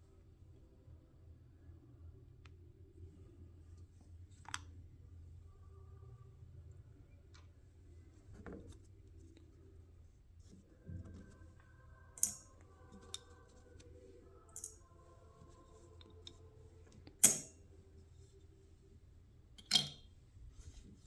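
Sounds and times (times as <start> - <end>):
metal parts clicking and clinking: 12.2 - 13.2, 14.6 - 14.8, 17.2 - 17.5, 19.6 - 20.1.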